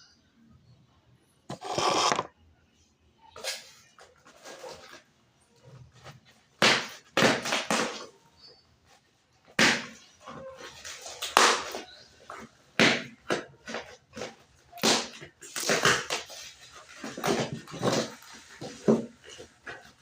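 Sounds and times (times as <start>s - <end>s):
packaging rustling and crinkling: 3.4s - 5.1s.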